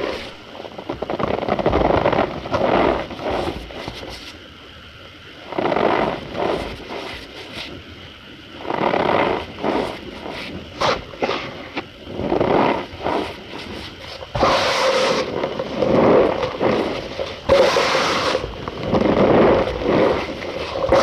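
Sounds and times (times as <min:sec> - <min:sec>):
cornstarch squeaking and crunching: 0:08.6 - 0:21.0.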